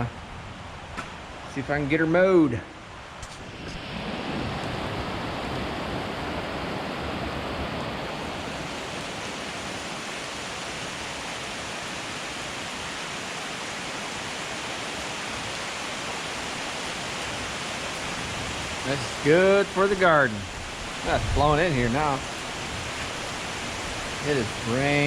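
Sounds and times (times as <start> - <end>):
rain downpour: 0.0 - 25.0.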